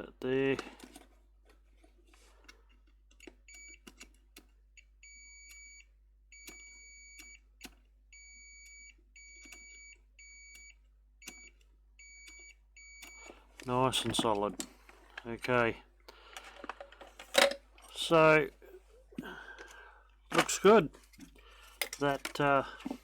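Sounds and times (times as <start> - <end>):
faint clicks of probes: 0.2 - 7.9, 8.6 - 18.0, 19.2 - 23.0
multimeter continuity beeps: 3.5 - 3.9, 5.0 - 14.2.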